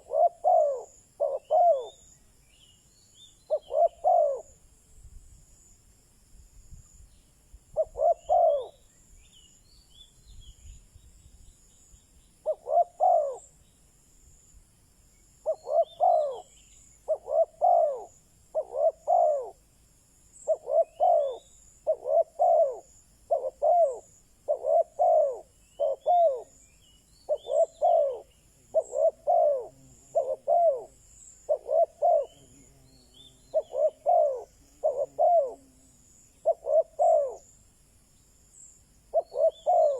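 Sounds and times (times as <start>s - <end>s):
dove cooing: 0.0s - 2.1s, 3.5s - 4.6s, 7.8s - 8.8s, 12.4s - 13.5s, 15.4s - 19.6s, 20.4s - 26.6s, 27.3s - 37.5s, 39.1s - 39.9s
small birds chirping: 0.0s - 4.6s, 15.2s - 19.6s, 20.4s - 39.9s.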